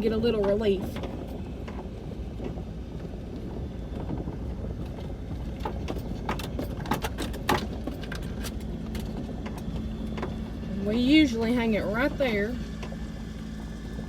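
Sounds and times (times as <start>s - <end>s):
truck engine rumbling: 0.0s - 14.0s
clinks and rattles: 5.5s - 10.5s.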